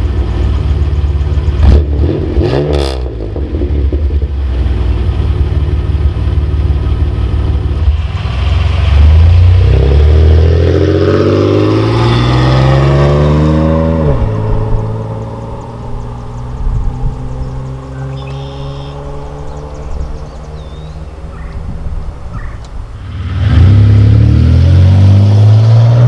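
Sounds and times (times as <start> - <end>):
car engine exhaust accelerating: 0.0 - 26.0.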